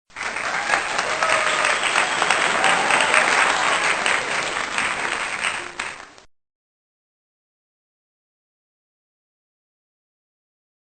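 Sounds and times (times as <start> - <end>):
crowd applauding: 0.1 - 6.3.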